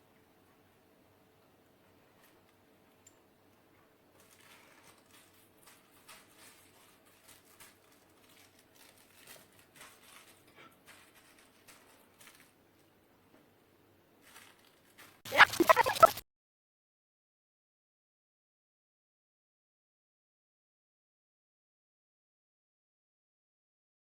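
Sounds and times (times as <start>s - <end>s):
squeaky toy squeaking: 15.3s - 16.2s.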